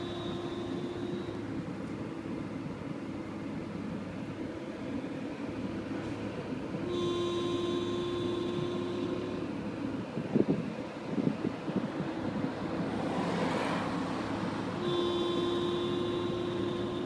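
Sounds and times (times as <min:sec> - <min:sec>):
pitched hum with whine: 0:00.0 - 0:17.0.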